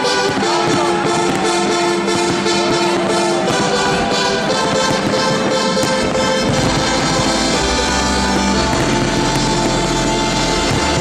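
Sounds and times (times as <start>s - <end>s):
orchestral music with brass: 0.0s - 11.0s
low bass line: 5.0s - 11.0s.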